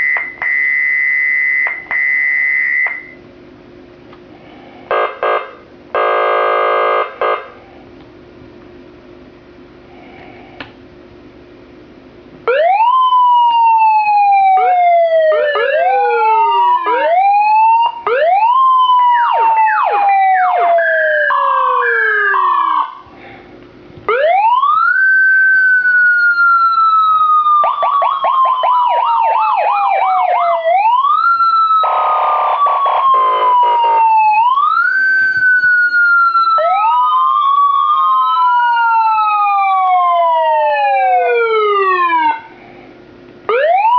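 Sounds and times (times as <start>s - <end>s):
electronic police siren: 0.0s - 3.2s, 12.5s - 23.1s, 24.1s - 42.5s, 43.5s - 43.9s.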